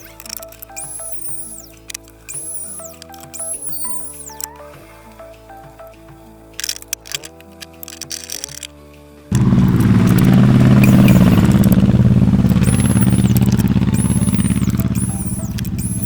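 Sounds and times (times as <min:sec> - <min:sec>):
power tool motor buzzing: 0:00.8 - 0:04.3, 0:09.3 - 0:16.0.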